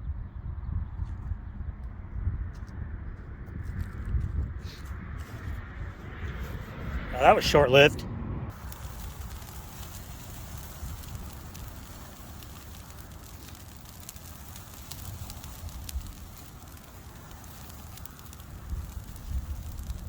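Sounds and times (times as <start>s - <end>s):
wind rumble on microphone: 0.0s - 7.3s, 8.0s - 20.0s
fire crackling and popping: 3.7s - 7.9s, 8.5s - 20.0s.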